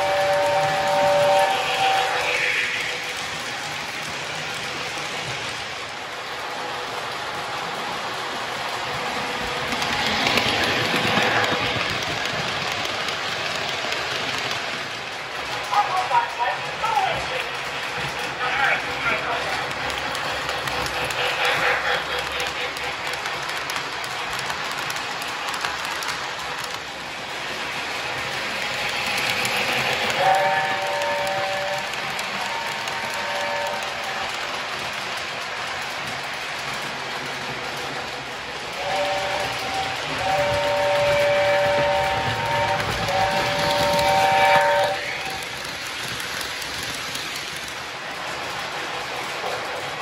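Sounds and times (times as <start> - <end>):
electronic steam whistle: 0.0 - 2.5, 38.8 - 45.1
toy train running on track: 0.0 - 50.0.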